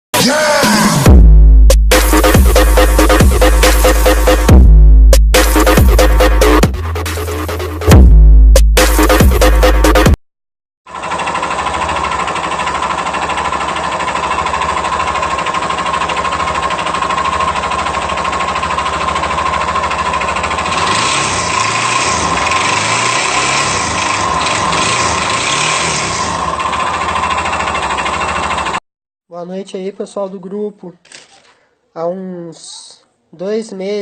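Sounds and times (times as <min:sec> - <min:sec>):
motorcycle engine idling and revving: 0:01.0 - 0:10.2, 0:10.9 - 0:28.8.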